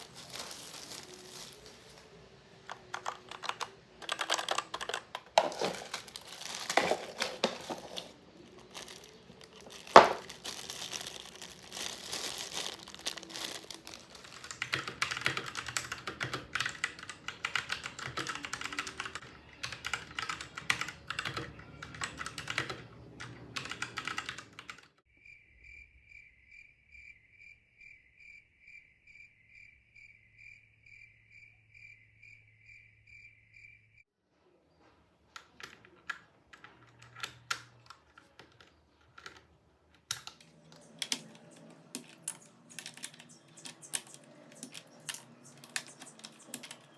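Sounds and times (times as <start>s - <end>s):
mechanical keyboard typing: 2.6s - 10.8s, 11.6s - 24.9s, 35.6s - 46.9s.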